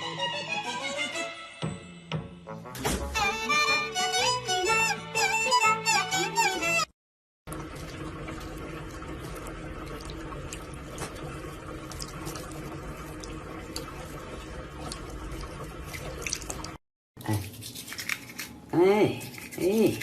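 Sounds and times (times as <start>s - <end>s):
running water: 7.5s - 18.5s.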